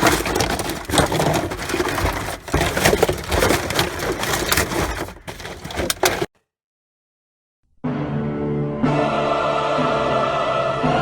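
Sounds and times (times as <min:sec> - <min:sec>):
cans and packaging rummaged in bin: 0:00.0 - 0:06.3.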